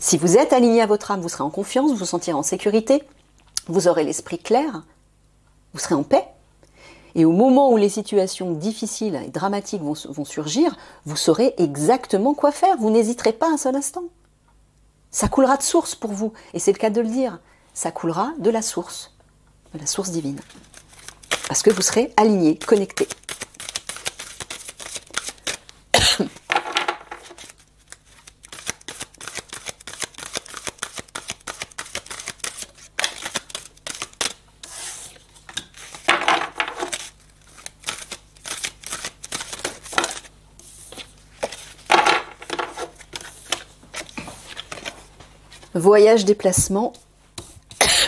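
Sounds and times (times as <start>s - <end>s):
cards shuffling: 20.3s - 25.8s, 26.4s - 45.7s.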